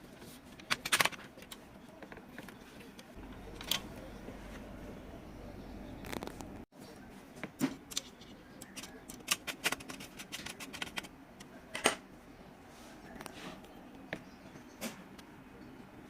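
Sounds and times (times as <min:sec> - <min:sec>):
plastic and metal parts clicking: 0:00.6 - 0:02.6.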